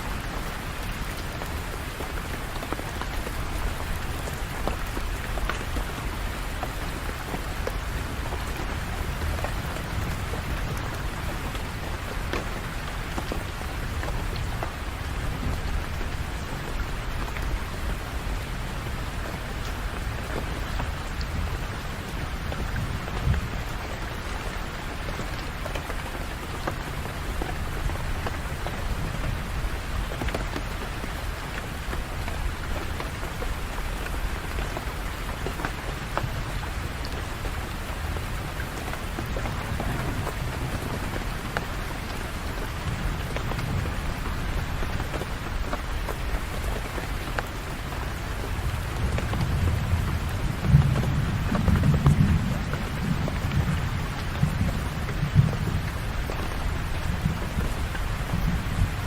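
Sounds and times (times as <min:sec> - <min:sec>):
steady rain hiss: 0:00.0 - 0:59.0
raindrop ticks: 0:00.1 - 0:59.0.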